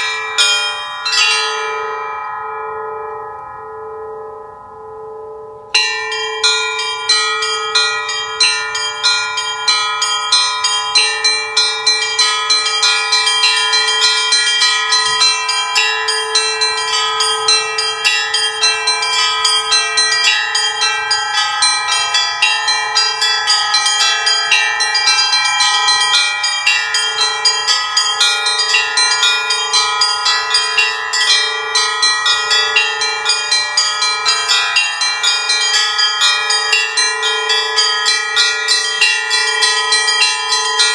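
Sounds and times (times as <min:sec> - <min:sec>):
small bells chiming quickly: 0:00.0 - 0:02.9, 0:05.8 - 0:40.9
low bell striking: 0:00.0 - 0:40.9.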